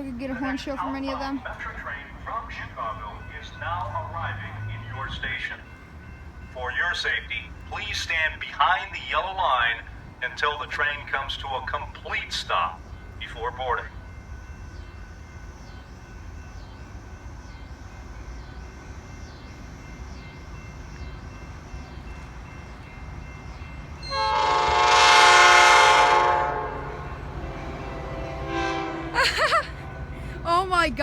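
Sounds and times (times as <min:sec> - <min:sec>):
train rumbling: 0:00.0 - 0:31.0
train horn: 0:24.0 - 0:29.2.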